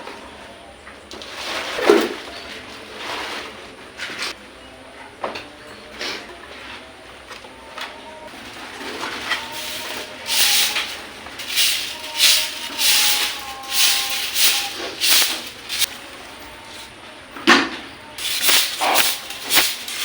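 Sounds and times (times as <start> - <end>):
rhythmic rubbing strokes: 8.4 - 17.1, 18.2 - 20.0.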